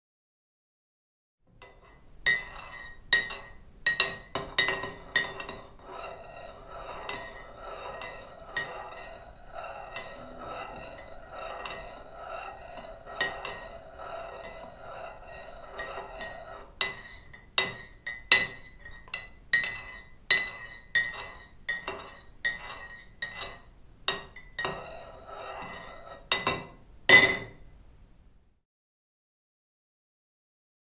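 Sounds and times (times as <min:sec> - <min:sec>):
swish of stirred tea: 0:04.4 - 0:18.0.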